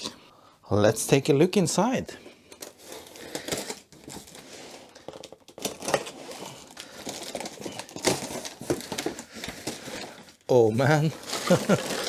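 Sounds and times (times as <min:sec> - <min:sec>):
packing material crinkling: 0:02.6 - 0:12.0
cardboard box being opened: 0:11.1 - 0:12.0.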